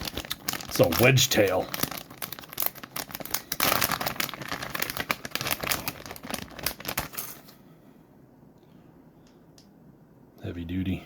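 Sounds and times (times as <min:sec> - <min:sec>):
plastic packaging crinkling: 0:00.0 - 0:07.6.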